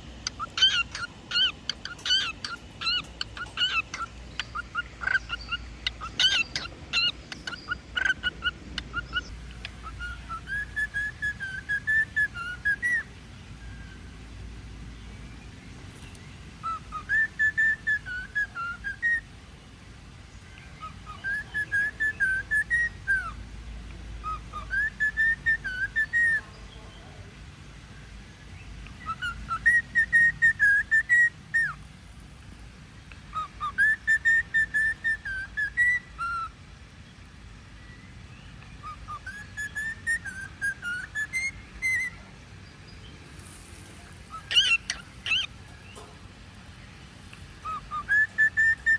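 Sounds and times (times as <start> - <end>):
cockatiel whistling a tune: 0.2 - 13.1, 16.6 - 19.3, 20.8 - 23.4, 24.2 - 26.4, 29.0 - 31.8, 33.3 - 36.5, 38.8 - 42.2, 44.3 - 46.1, 47.6 - 48.9.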